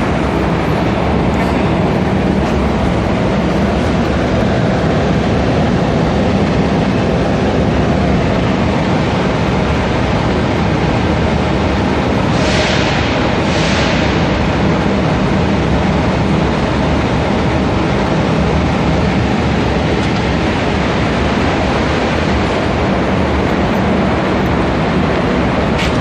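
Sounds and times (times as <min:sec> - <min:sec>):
car engine running: 0:00.0 - 0:11.8.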